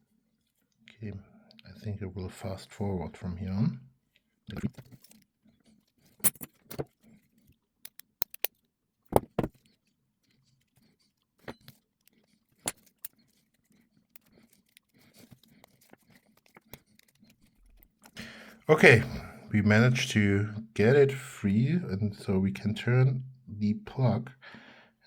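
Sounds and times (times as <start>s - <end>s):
metallic clicks of key in lock: 7.8s - 8.6s.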